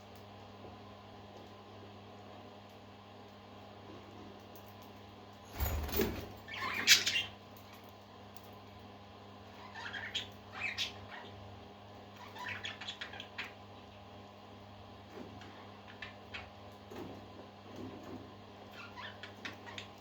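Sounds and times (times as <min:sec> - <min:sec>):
parakeets chirping: 0:06.5 - 0:07.3, 0:09.6 - 0:11.4, 0:12.2 - 0:13.6, 0:18.8 - 0:20.0.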